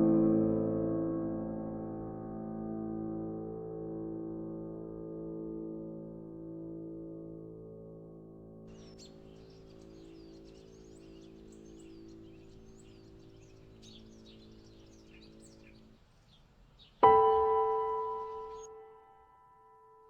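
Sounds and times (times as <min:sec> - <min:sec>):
small birds chirping: 0:08.7 - 0:19.4
piano chord ringing: 0:17.0 - 0:20.0.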